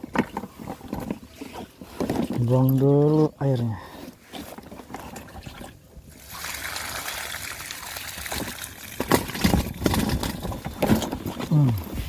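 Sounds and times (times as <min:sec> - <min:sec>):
water pouring from container: 0:05.0 - 0:10.9
knocks and thumps: 0:08.4 - 0:11.7.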